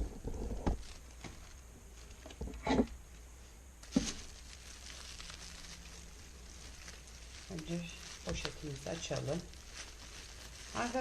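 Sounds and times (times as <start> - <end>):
cardboard packaging knocks and scrapes: 3.9 - 4.4.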